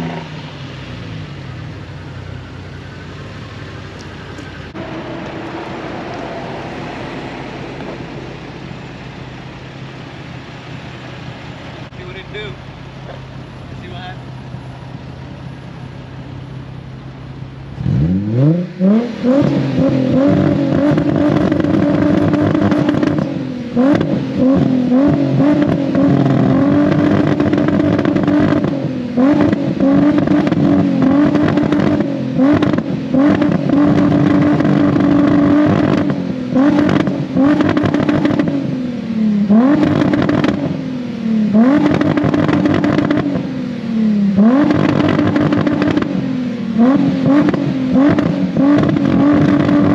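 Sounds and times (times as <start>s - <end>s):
car engine idling and revving: 0.0s - 49.9s.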